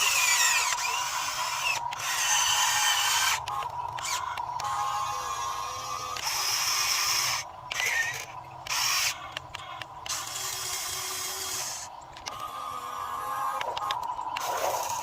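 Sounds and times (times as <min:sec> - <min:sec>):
electric motors whirring and grinding: 0:00.0 - 0:15.0.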